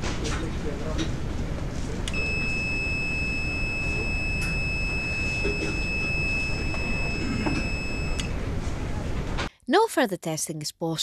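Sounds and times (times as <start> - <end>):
low background hum: 0.0 - 10.9
multimeter beeper tone: 2.1 - 8.5.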